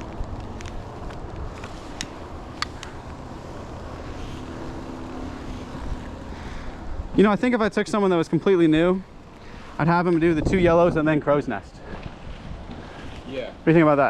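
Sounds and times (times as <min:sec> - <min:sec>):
wind rumble on microphone: 0:00.0 - 0:13.6.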